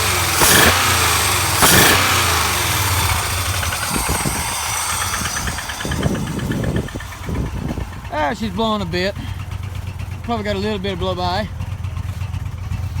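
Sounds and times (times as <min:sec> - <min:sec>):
car engine revving and idling: 0:00.0 - 0:13.0.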